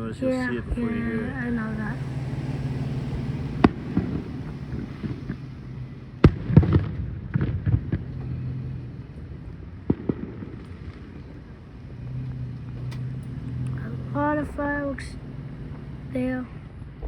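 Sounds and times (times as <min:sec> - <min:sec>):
low hum: 0:00.0 - 0:17.0
fireworks bangs: 0:00.4 - 0:17.0
small firework pops: 0:06.2 - 0:08.3, 0:09.1 - 0:11.4.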